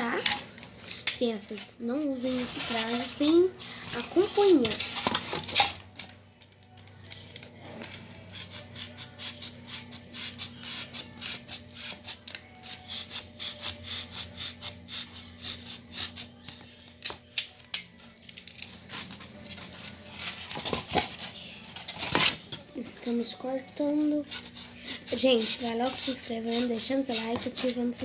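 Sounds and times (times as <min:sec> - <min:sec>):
knife cutting styrofoam: 0:08.3 - 0:16.4, 0:24.0 - 0:28.0.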